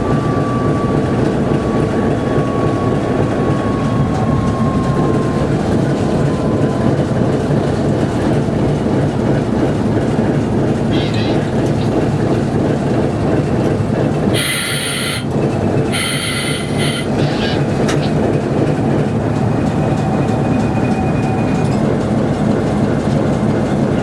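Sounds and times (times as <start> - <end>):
diesel locomotive engine hum: 0.0 - 24.0
short high-pitched bursts: 14.4 - 15.3, 16.0 - 17.1.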